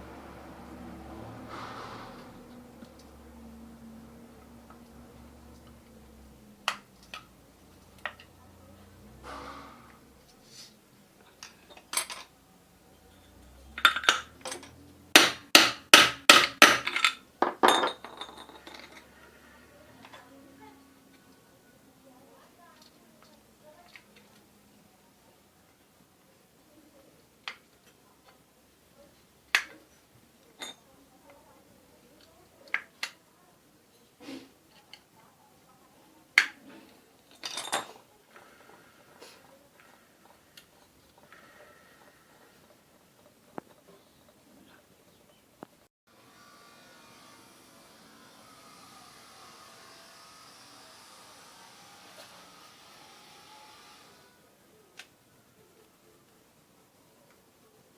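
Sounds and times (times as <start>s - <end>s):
metal tools clinking: 11.2s - 12.3s, 13.1s - 14.8s, 16.5s - 19.2s, 30.6s - 30.9s, 37.3s - 38.7s
hammer striking metal: 15.2s - 17.0s.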